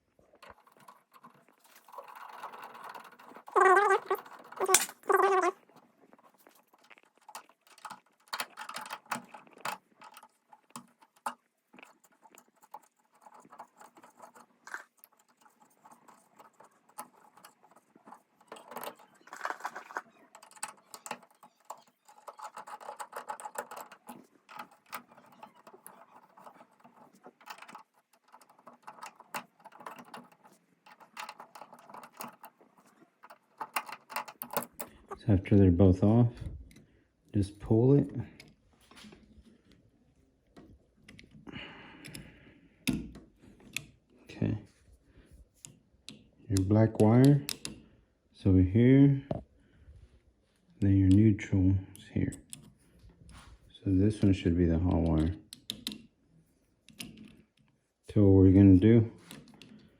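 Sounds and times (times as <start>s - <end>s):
screwdriver scraping and clicking on metal: 0.4s - 35.2s, 52.0s - 53.4s, 56.9s - 59.9s.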